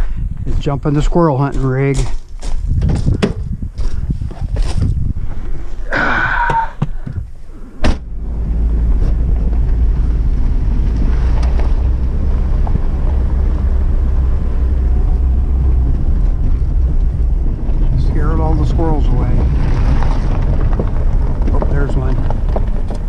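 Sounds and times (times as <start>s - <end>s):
vehicle engine rumbling: 0.0s - 23.0s
vehicle door slamming: 7.8s - 8.2s.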